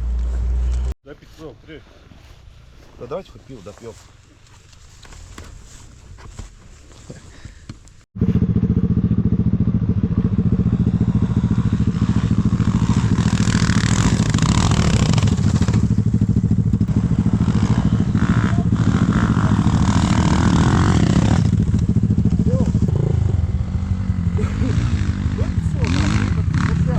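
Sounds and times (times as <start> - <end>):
dirt bike engine running: 8.2 - 26.9.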